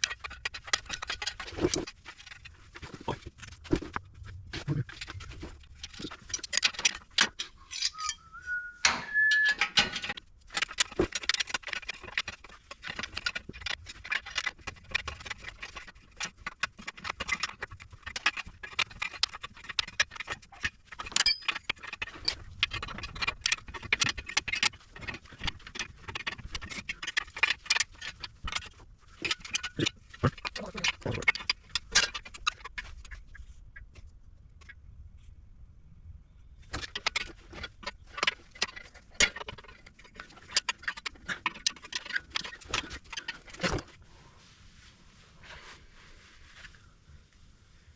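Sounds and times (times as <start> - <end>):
metal tools clinking: 4.8 - 32.9
rising squeak: 7.5 - 9.8.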